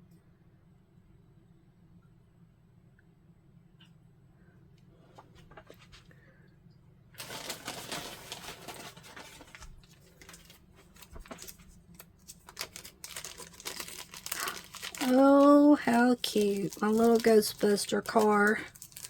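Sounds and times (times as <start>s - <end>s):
crinkly packaging handled: 7.2s - 19.0s.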